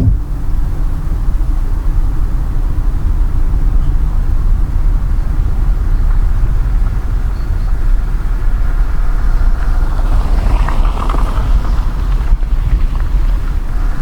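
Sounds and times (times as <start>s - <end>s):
higher grainy noise: 0.0s - 0.4s
car engine and tyres rumbling: 0.0s - 14.0s.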